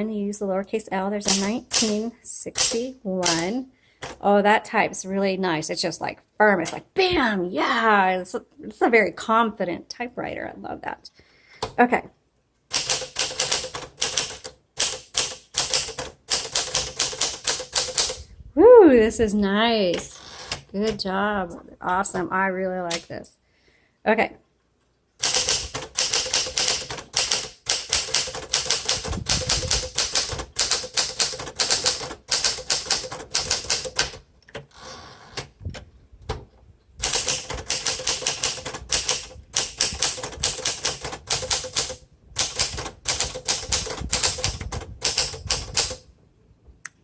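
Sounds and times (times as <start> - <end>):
manual typewriter typing: 1.2 - 4.2, 12.7 - 18.2, 25.2 - 34.8, 37.0 - 46.0.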